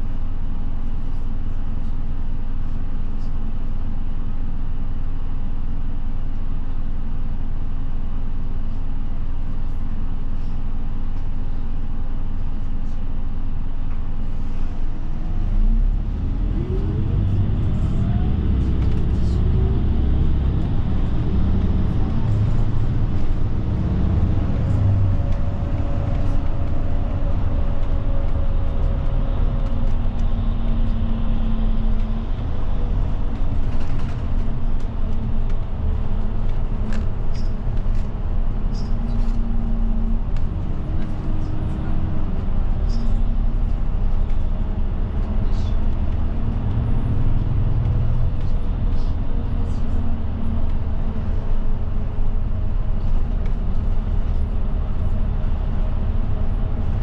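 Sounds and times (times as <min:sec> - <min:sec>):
bus diesel engine running: 0:00.0 - 0:57.0
engine whine: 0:13.8 - 0:57.0.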